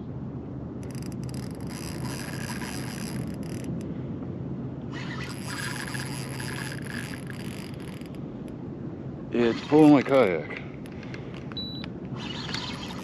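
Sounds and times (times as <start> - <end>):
steady low hum: 0.0 - 13.0
fishing reel drag buzzing: 0.8 - 3.8, 4.9 - 8.2, 12.2 - 13.0.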